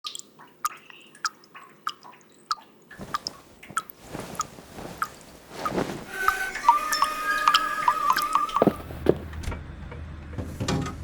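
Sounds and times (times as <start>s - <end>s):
water dripping: 0.0s - 5.5s, 6.4s - 8.8s.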